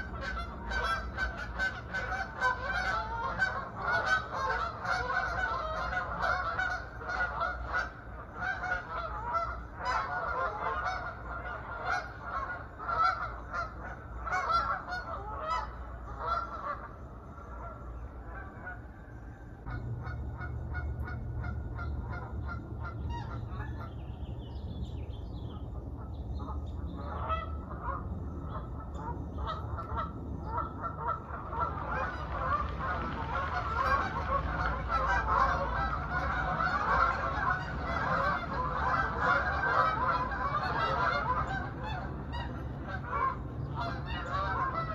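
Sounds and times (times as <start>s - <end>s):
geese honking: 0.0s - 44.9s
low steady rumble: 0.0s - 44.9s
bird chirps: 22.9s - 27.1s.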